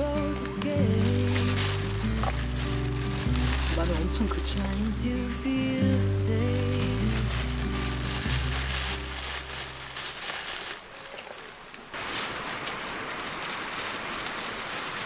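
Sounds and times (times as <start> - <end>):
background music: 0.0 - 9.5
meat sizzling on a grill: 0.0 - 15.0.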